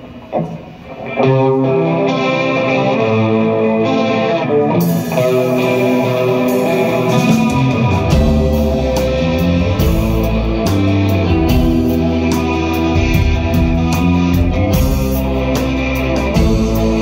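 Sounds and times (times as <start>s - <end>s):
electric guitar chords: 0.0s - 17.0s
bass and drum hits: 7.1s - 17.0s.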